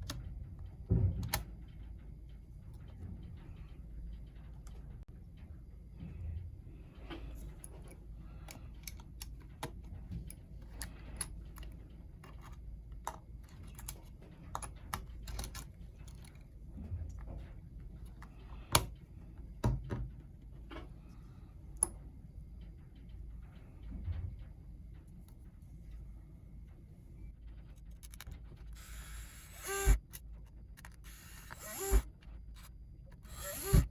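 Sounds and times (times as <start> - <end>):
steady low hum: 0.0 - 33.9
laptop parts clicking and tapping: 27.8 - 33.9.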